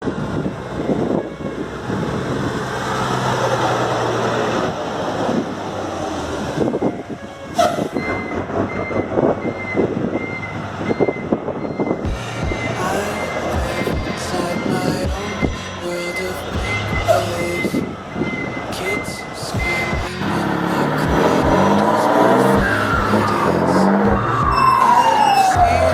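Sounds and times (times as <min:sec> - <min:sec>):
truck engines running loudly: 0:00.0 - 0:25.9
short beeps: 0:07.7 - 0:20.2.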